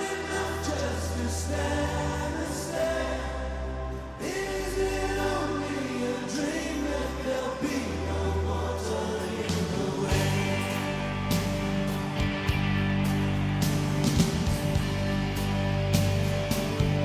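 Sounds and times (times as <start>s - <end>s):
wordless choir-like backing vocals: 0.0s - 17.0s
live rock band music: 9.5s - 17.0s.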